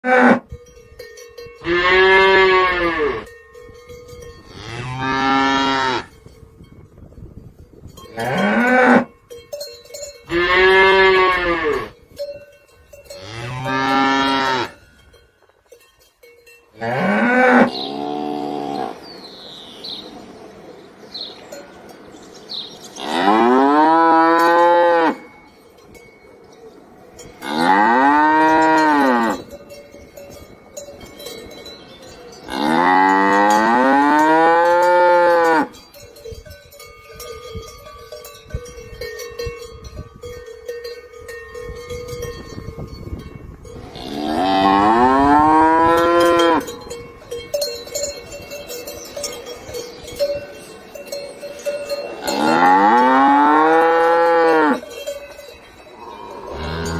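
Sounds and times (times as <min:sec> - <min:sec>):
cow mooing: 0:00.0 - 0:00.4, 0:01.6 - 0:03.3, 0:04.5 - 0:06.1, 0:08.2 - 0:09.1, 0:10.3 - 0:11.9, 0:13.2 - 0:14.8, 0:16.8 - 0:19.1, 0:22.9 - 0:25.3, 0:27.4 - 0:29.4, 0:32.5 - 0:35.8, 0:43.9 - 0:46.7, 0:52.2 - 0:54.8, 0:56.0 - 0:56.9.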